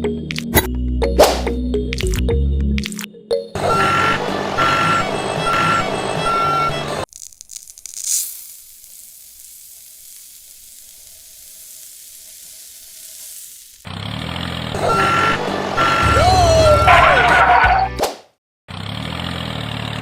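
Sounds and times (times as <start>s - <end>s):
steady hiss: 7.8s - 13.8s.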